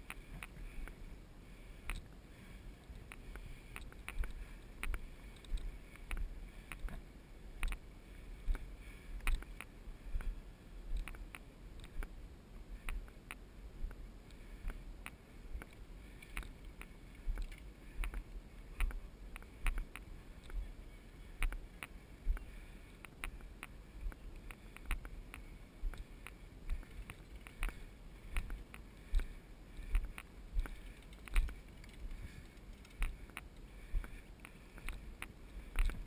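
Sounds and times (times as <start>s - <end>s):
walking footsteps: 21.4s - 36.0s.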